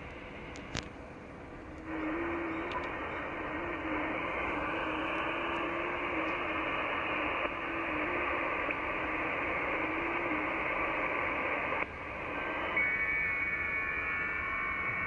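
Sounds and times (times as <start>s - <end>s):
click: 0.0s - 1.0s, 2.6s - 3.0s
radio static hiss: 0.0s - 15.0s.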